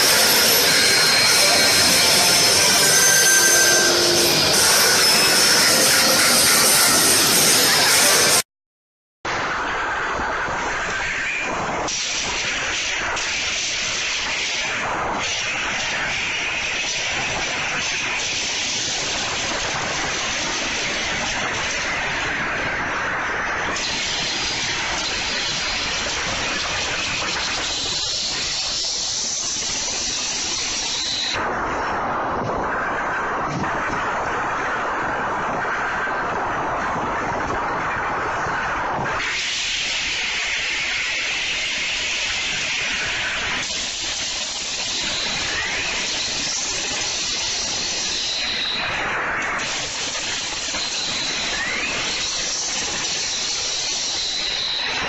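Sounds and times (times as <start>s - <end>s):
slot machine rushing noise: 0.0s - 8.4s.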